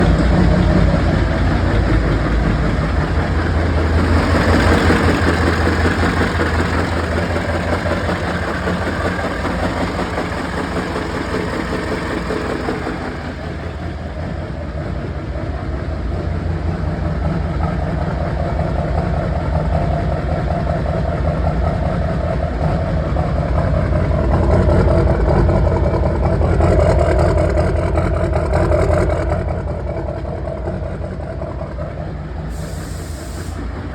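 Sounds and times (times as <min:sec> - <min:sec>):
diesel engine idling with knock: 0:00.0 - 0:33.9.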